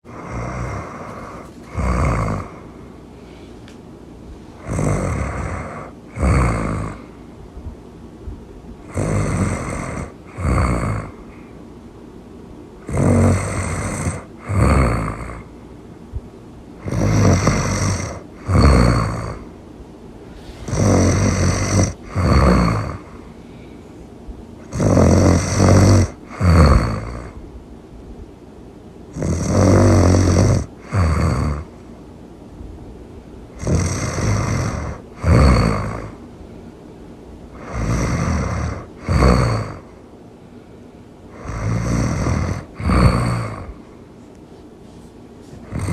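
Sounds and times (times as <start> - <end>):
person snoring: 0.0 - 2.9, 4.6 - 7.2, 8.8 - 11.5, 12.8 - 15.5, 16.8 - 19.5, 20.3 - 23.3, 24.6 - 27.4, 29.1 - 31.8, 33.5 - 36.2, 37.5 - 40.0, 41.3 - 43.9, 45.5 - 45.9.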